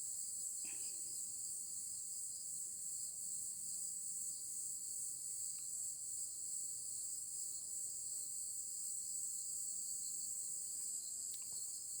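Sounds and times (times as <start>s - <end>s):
insects chirring: 5.4s - 12.0s
faint click: 10.8s - 11.6s.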